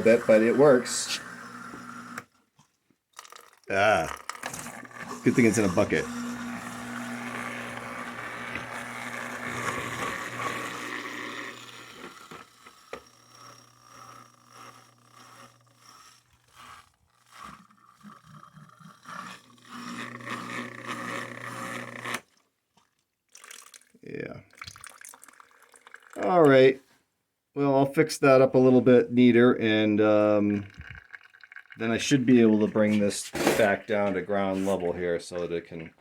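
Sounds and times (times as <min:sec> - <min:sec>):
drain pump humming: 0:00.0 - 0:02.3, 0:03.2 - 0:15.9, 0:16.6 - 0:22.2
pump sputtering and slurping air: 0:00.0 - 0:02.3, 0:03.2 - 0:22.3, 0:30.4 - 0:34.9.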